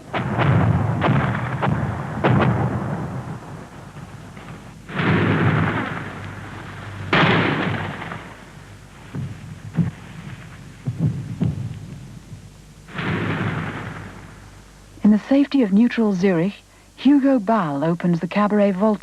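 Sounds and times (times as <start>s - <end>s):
large rumbling blasts: 0.0s - 14.5s
sharp bangs: 0.0s - 14.7s.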